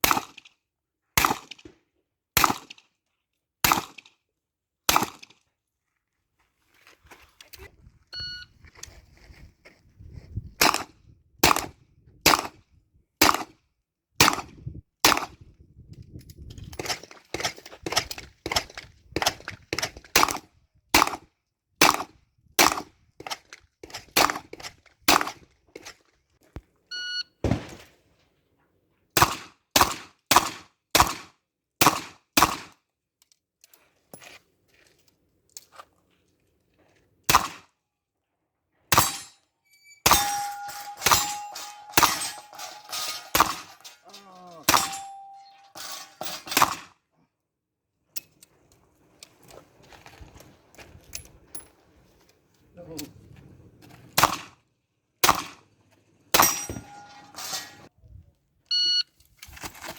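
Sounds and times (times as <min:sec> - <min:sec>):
pistol shots: 0:03.6 - 0:04.0, 0:27.4 - 0:27.9, 0:37.3 - 0:37.6, 0:44.7 - 0:45.4, 0:54.2 - 0:54.5, 0:55.2 - 0:55.6
shot timer beep: 0:58.7 - 0:59.1.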